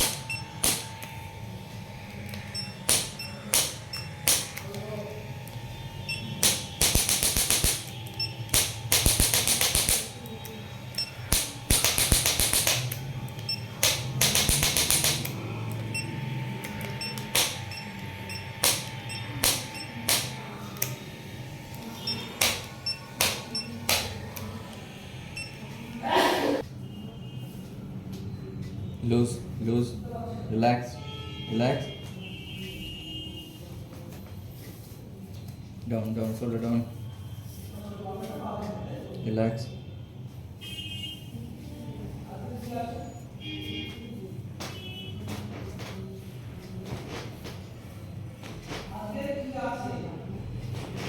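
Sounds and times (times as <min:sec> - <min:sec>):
sharp knocks and clicks: 0:06.4 - 0:07.9, 0:08.5 - 0:10.1, 0:11.3 - 0:13.0, 0:13.8 - 0:15.4
rapid tapping: 0:06.4 - 0:10.2, 0:11.3 - 0:13.0, 0:13.8 - 0:15.4.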